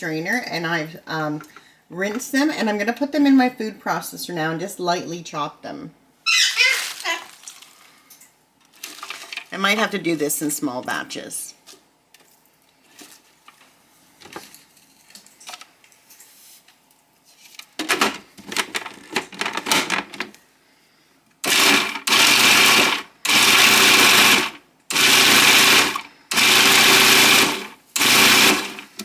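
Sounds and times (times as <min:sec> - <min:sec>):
clattering of handling: 0:08.6 - 0:09.9
food processor motor whirring: 0:21.4 - 0:29.0.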